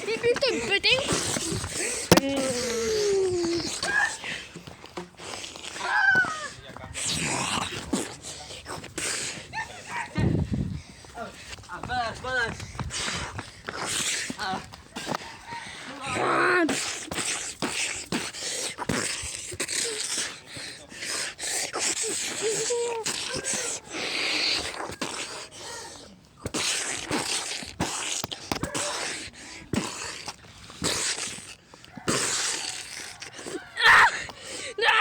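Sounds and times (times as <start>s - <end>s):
mouth sound effects: 0.6s - 4.1s.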